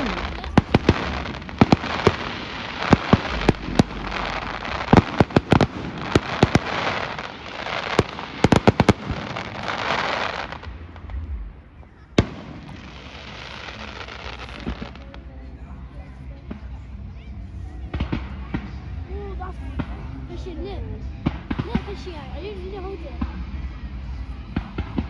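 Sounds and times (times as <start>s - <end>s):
fireworks bangs: 0.0s - 15.2s
fireworks crackle: 0.0s - 15.2s.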